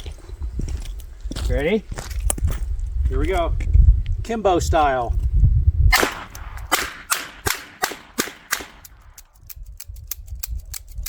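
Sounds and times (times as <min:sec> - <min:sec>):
revolver shots ringing: 0:05.9 - 0:08.9
light gun clicks: 0:06.0 - 0:11.0.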